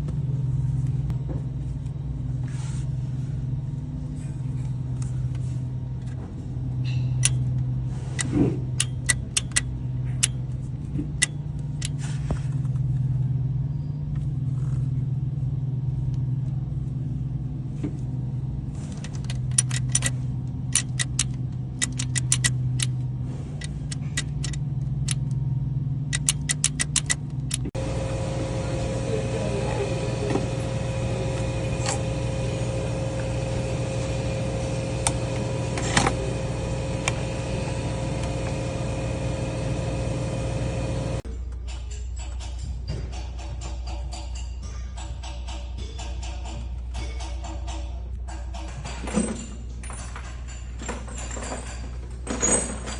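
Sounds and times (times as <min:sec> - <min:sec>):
sharp metallic clicks and ticks: 0:08.8 - 0:10.4, 0:19.0 - 0:20.1, 0:20.7 - 0:23.0, 0:23.6 - 0:25.4, 0:26.1 - 0:27.8
steady hum with held tone: 0:13.3 - 0:41.2
pickup truck engine running: 0:18.2 - 0:41.3.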